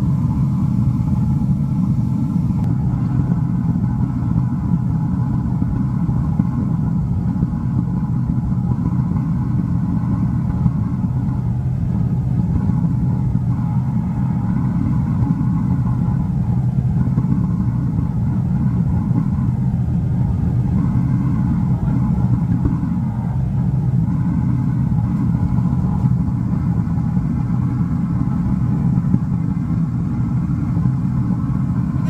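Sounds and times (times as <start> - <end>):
furnace burner rumbling: 0.0 - 32.0.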